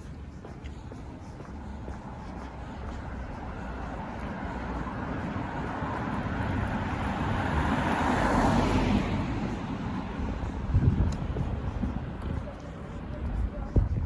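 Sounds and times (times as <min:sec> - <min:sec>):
car driving past: 0:04.6 - 0:10.4.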